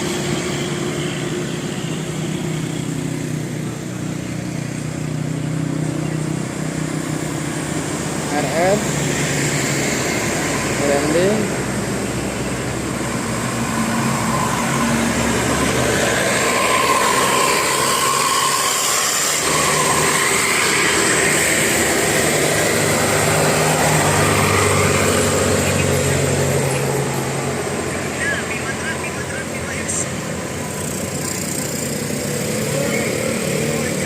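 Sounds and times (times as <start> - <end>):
bus engine and road noise: 0.0 - 34.0.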